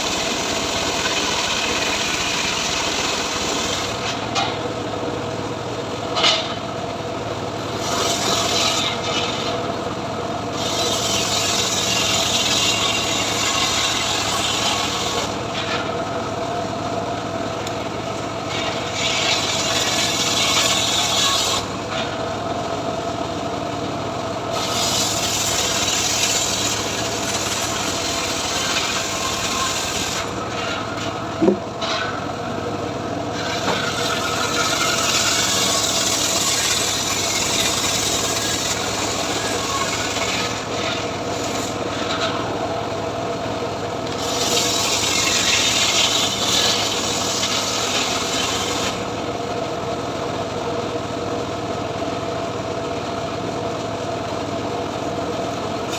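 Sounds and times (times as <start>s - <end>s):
saw blade cutting wood: 0.0s - 4.7s, 6.2s - 6.7s, 7.6s - 9.7s, 10.4s - 16.4s, 17.3s - 22.4s, 24.4s - 32.3s, 33.3s - 42.8s, 44.0s - 49.2s
sawmill engine running: 0.0s - 55.9s.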